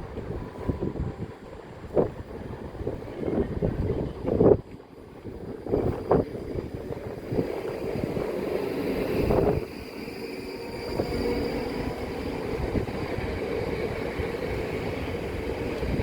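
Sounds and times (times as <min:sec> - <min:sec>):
train running: 0:00.0 - 0:16.0
wind buffeting microphone: 0:00.0 - 0:16.0
faint steady high tone: 0:09.4 - 0:12.4.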